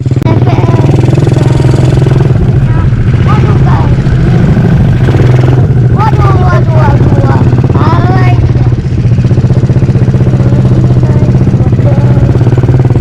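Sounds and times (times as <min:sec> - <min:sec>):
small engine running: 0:00.0 - 0:13.0
person speaking: 0:02.6 - 0:04.1.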